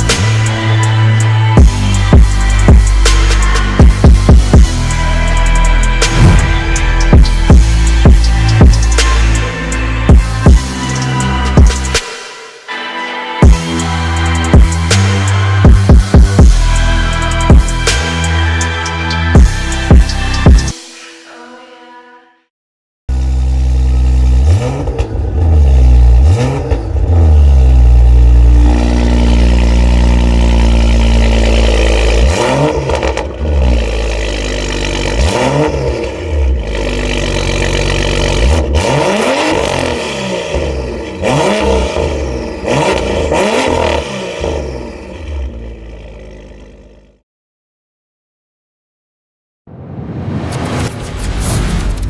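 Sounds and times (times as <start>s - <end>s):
car engine revving: 1.6s - 9.8s, 23.1s - 47.0s.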